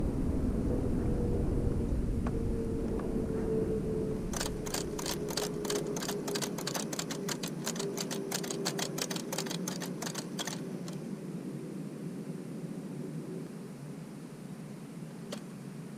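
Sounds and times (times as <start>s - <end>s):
steady hum: 0.0s - 15.9s.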